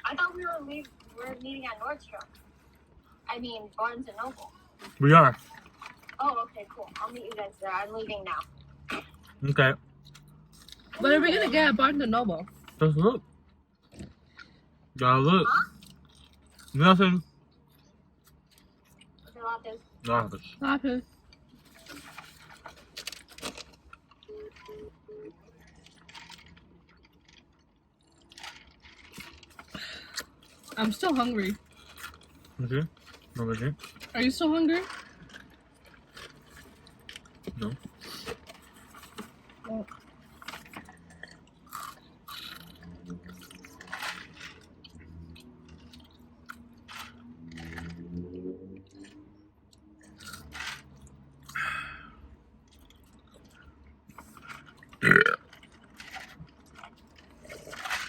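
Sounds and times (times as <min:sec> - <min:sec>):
chewing and crunching food: 0:00.0 - 0:58.0
low steady hum: 0:00.0 - 0:58.0
phone beeping: 0:24.3 - 0:25.4.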